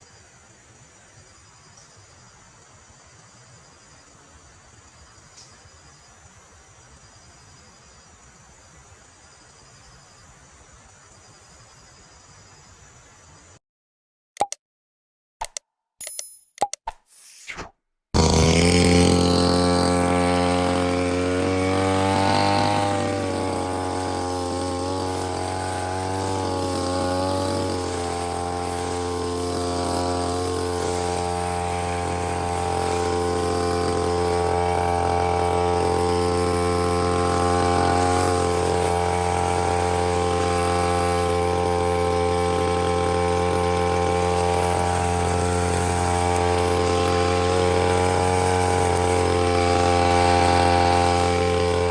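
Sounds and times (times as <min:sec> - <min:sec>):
brushcutter engine at high revs: 0:18.2 - 0:51.9.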